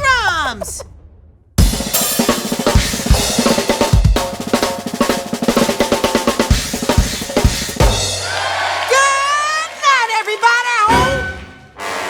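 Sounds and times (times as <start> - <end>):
drum kit solo: 1.6 - 8.8.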